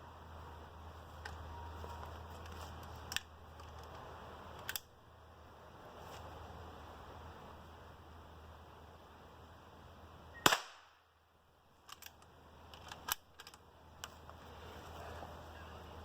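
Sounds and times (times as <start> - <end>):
metallic clicks of rifle action: 2.4 - 4.0, 4.6 - 4.9, 11.8 - 14.4
rifle shot crack: 10.4 - 11.0.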